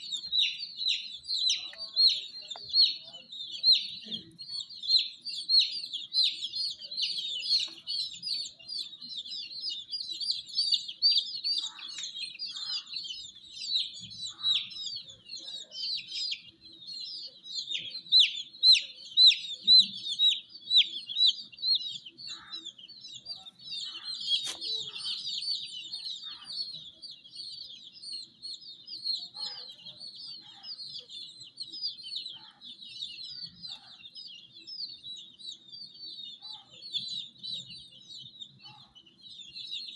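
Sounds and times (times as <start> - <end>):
baby chicks peeping: 0.0 - 39.9.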